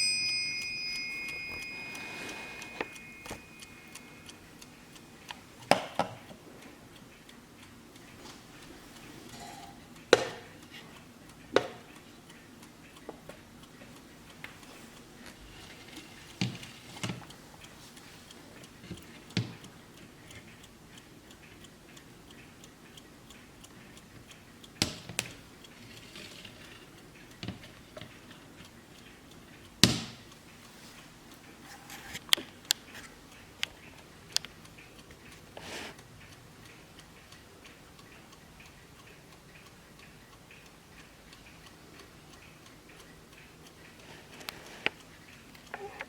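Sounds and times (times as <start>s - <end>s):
clock ticking: 0.0s - 46.0s.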